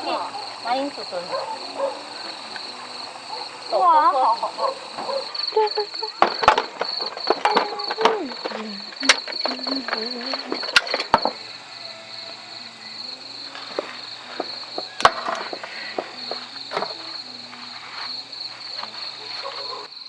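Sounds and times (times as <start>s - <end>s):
crickets chirping: 0.0s - 20.0s
sharp clicks and knocks: 6.2s - 11.4s.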